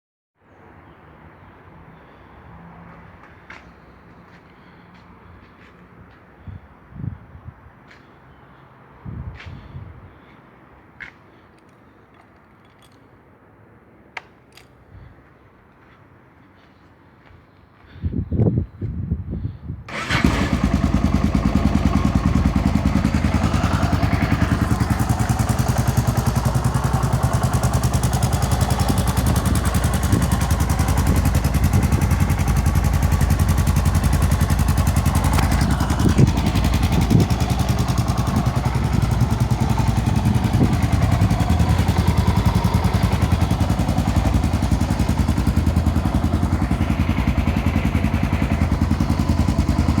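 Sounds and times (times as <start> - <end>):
motorcycle engine idling: 19.9 - 50.0.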